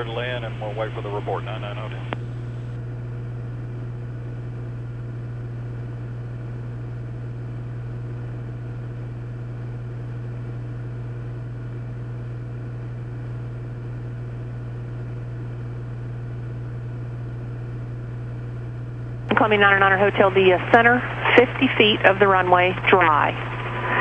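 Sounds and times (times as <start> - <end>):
airplane engine and propeller droning: 0.0 - 2.7, 19.0 - 24.0.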